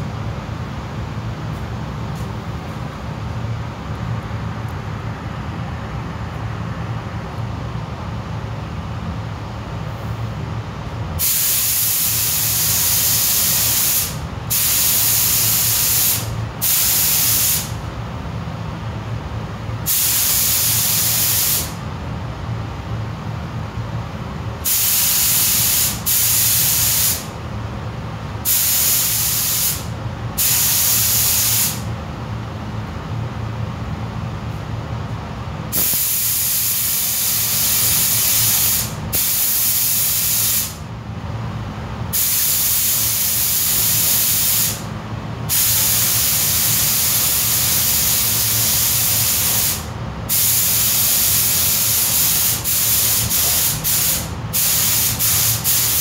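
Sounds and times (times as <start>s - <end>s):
steady low hum: 0.0s - 56.0s
spray gun air hiss: 11.2s - 17.8s, 19.8s - 21.8s, 24.6s - 27.3s, 28.4s - 31.9s, 35.7s - 40.8s, 42.1s - 44.9s, 45.5s - 56.0s.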